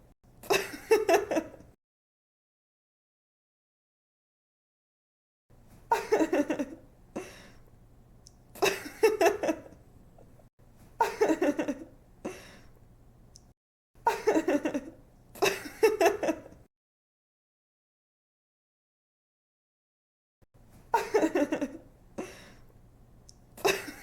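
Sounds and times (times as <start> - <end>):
woman giggling: 0.4 - 1.7, 5.9 - 7.3, 8.6 - 9.8, 11.0 - 11.9, 14.1 - 16.6, 20.9 - 22.3, 23.6 - 24.0.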